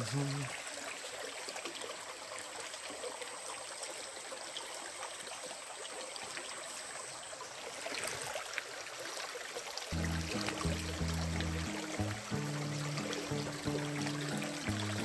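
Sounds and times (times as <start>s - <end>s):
stream water running: 0.0s - 15.0s
music with low bass line: 10.0s - 15.0s.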